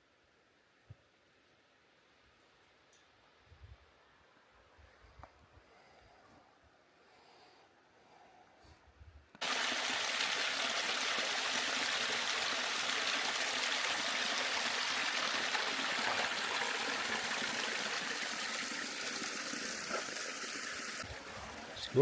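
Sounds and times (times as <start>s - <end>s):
stream running: 9.4s - 22.0s.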